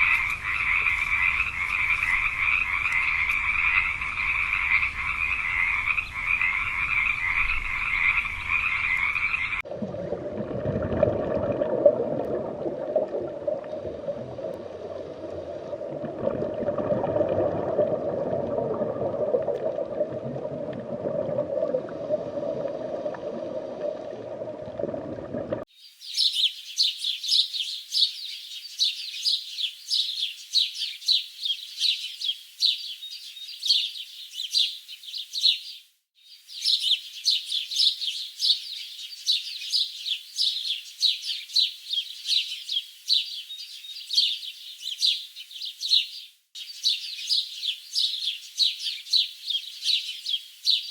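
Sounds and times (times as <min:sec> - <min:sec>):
frogs croaking: 0:00.0 - 0:09.6.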